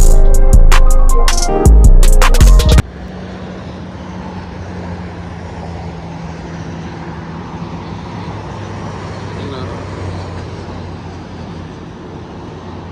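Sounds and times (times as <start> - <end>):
car engine hum: 0.0 - 9.8
road noise: 0.0 - 12.9.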